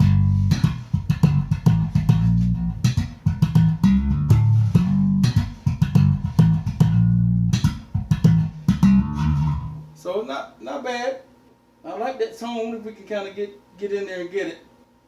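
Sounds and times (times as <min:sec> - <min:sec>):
slap bass playing: 0:00.0 - 0:10.0.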